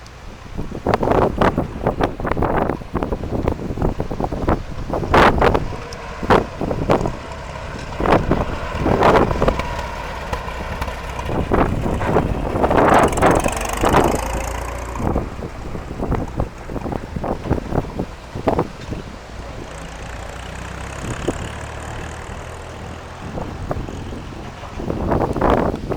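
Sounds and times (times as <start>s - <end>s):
tractor engines running: 0.0s - 25.9s
wind buffeting microphone: 0.0s - 25.9s.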